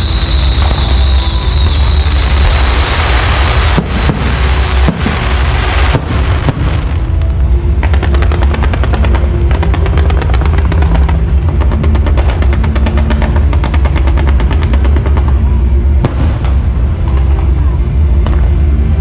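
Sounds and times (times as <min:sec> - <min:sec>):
firework whistling hiss: 0:00.0 - 0:11.8
firecracker bangs: 0:00.0 - 0:17.6
rapid firecracker crackle: 0:00.0 - 0:19.0.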